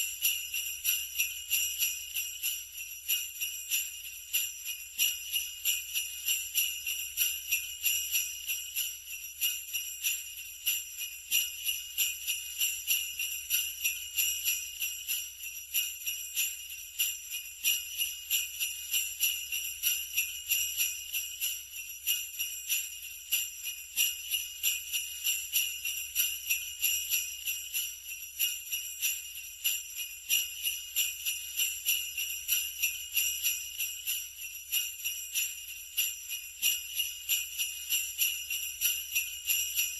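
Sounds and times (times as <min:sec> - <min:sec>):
sleigh bells jingling: 0:00.0 - 0:39.9.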